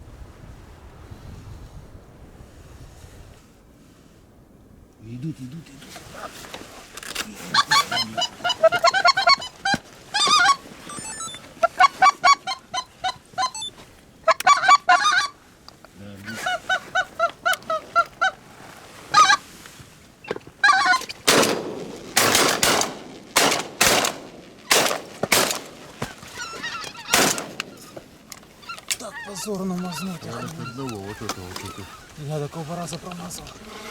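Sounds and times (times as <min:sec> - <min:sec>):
geese honking: 0:07.2 - 0:15.4, 0:16.2 - 0:19.6, 0:20.2 - 0:21.6, 0:22.2 - 0:33.9
shotgun shots: 0:21.2 - 0:25.8, 0:27.1 - 0:27.9.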